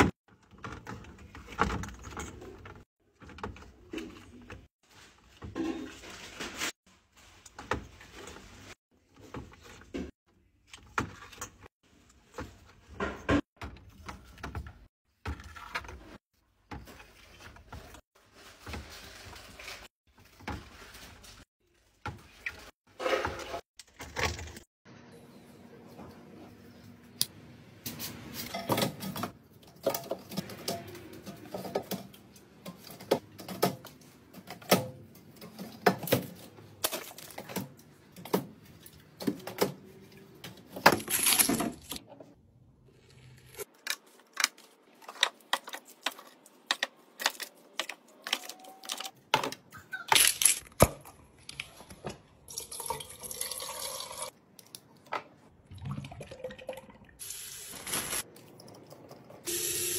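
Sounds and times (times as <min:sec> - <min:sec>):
items being handled and set down: 0:00.0 - 0:24.7, 0:27.8 - 0:52.5, 0:57.2 - 0:59.6
running water hissing: 0:59.5 - 0:59.9.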